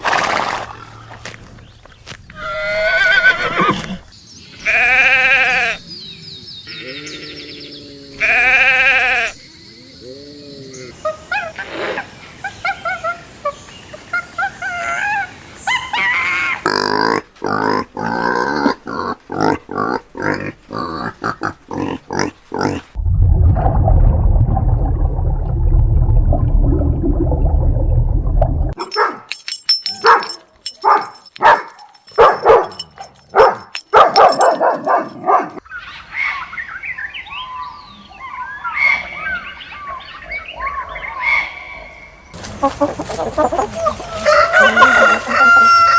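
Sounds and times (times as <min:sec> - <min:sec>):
loud low rumbling: 0:23.0 - 0:28.8
sharp clicking calls: 0:28.8 - 0:35.6.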